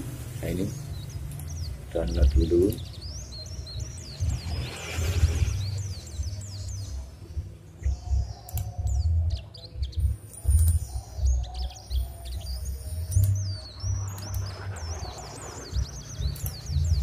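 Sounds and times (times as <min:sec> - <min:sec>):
small birds chirping: 0:00.0 - 0:17.0
low rumble: 0:03.5 - 0:09.3.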